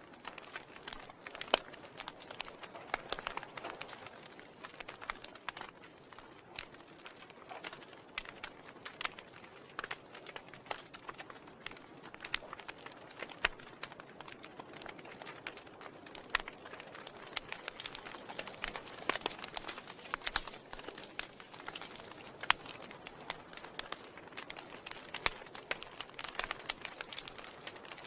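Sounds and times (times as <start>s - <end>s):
wood fire crackling: 0.0s - 28.0s.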